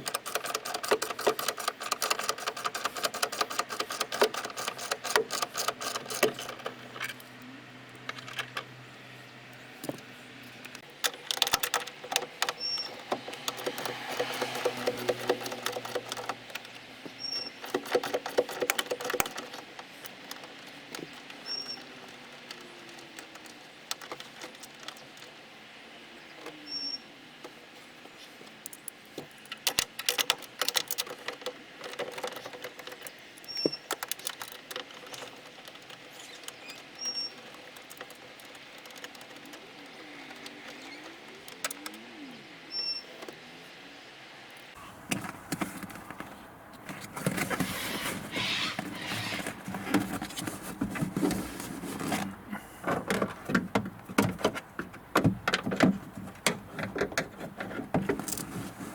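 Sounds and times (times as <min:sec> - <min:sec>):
tools clicking on car door parts: 0:00.0 - 0:07.2, 0:10.9 - 0:25.1, 0:52.8 - 0:58.5.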